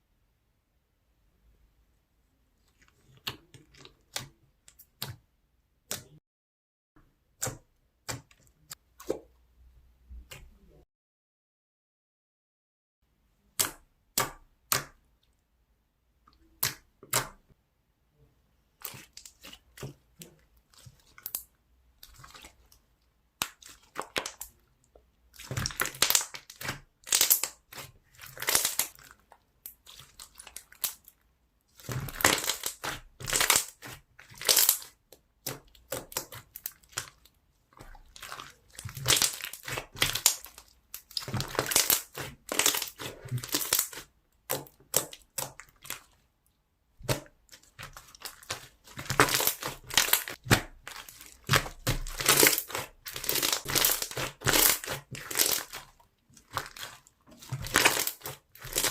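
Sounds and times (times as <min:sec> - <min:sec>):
slime crackling: 0:25.3 - 0:46.2, 0:47.0 - 0:58.9
slime clicking and popping: 0:31.8 - 0:37.2, 0:37.8 - 0:46.0, 0:47.0 - 0:58.9.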